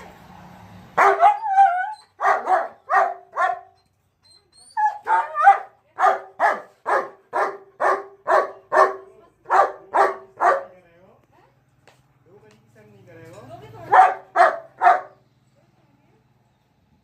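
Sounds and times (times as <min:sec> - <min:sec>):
dog barking: 0:01.0 - 0:03.8, 0:04.9 - 0:10.7, 0:13.9 - 0:15.2
dog yelping: 0:01.0 - 0:10.7, 0:13.9 - 0:15.1.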